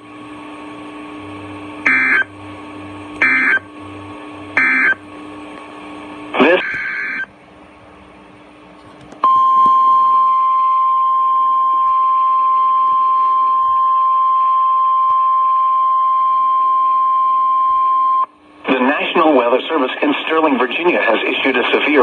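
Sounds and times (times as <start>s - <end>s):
steady high alarm beep: 1.9s - 2.3s, 3.2s - 3.6s, 4.6s - 5.0s.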